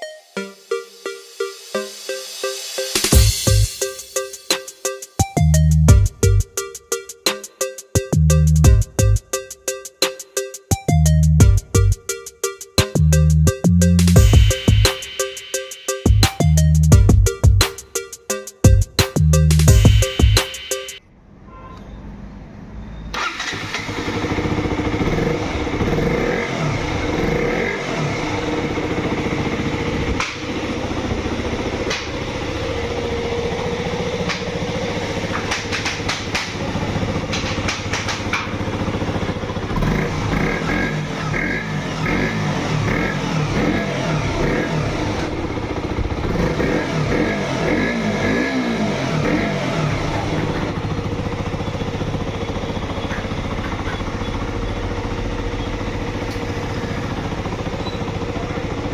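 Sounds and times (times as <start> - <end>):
motorcycle engine starting and running: 3.0 - 4.0, 5.5 - 6.5, 8.2 - 9.2, 12.8 - 15.2, 18.7 - 21.0, 23.1 - 58.9.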